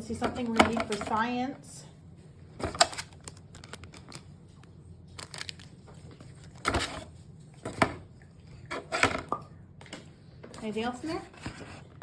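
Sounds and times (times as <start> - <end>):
rustling of plastic and cardboard: 2.5 - 7.2
loud short packaging crackles: 2.6 - 4.3, 5.1 - 7.0.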